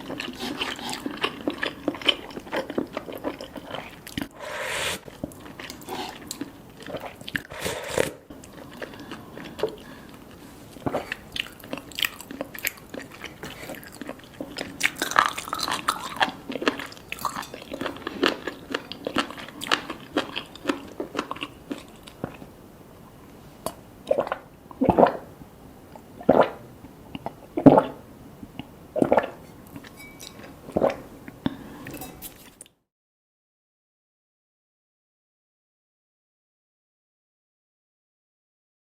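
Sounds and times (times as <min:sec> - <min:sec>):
chewing food: 0:00.0 - 0:04.4, 0:05.0 - 0:22.5, 0:28.6 - 0:32.7.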